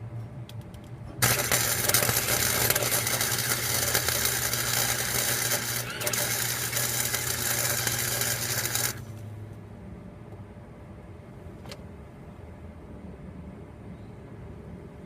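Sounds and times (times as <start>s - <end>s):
welder low hum: 1.2s - 9.2s
welding arc crackling: 1.2s - 9.2s.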